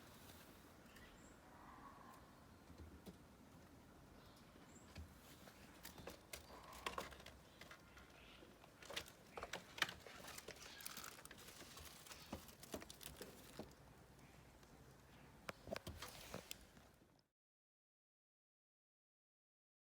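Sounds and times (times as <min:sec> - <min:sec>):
soft bird calls: 0:00.0 - 0:02.9, 0:03.9 - 0:12.6.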